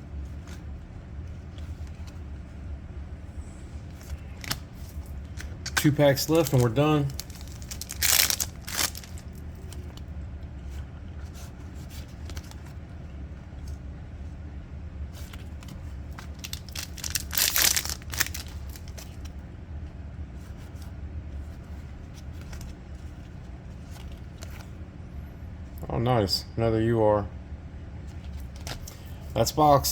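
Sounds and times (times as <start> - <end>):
steady low hum: 0.0 - 29.9
light crinkling: 3.9 - 10.0
cards ticking as handled: 4.0 - 10.0, 15.3 - 19.4
foil packs tearing open: 4.3 - 9.3, 16.3 - 19.1.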